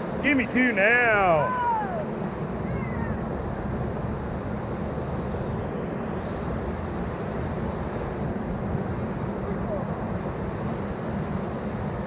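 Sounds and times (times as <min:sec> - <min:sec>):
river rapids rushing: 0:00.0 - 0:12.0.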